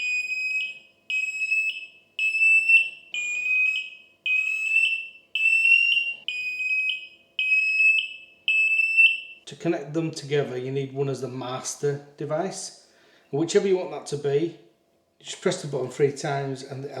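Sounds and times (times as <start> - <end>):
smoke alarm beeping: 0.0 - 9.4.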